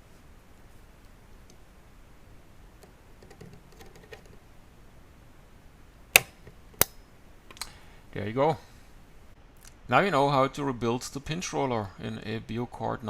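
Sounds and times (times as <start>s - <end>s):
washer snapping onto shaft: 6.2s - 6.9s.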